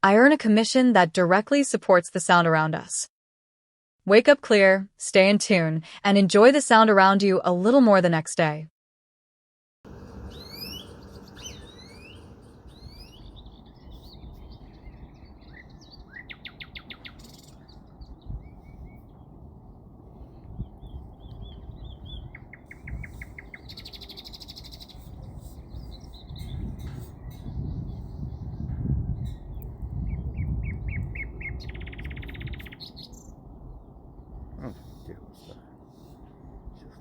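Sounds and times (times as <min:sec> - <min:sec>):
small birds chirping and trilling: 0:09.9 - 0:19.3, 0:20.2 - 0:37.0
low background rumble: 0:09.9 - 0:37.0.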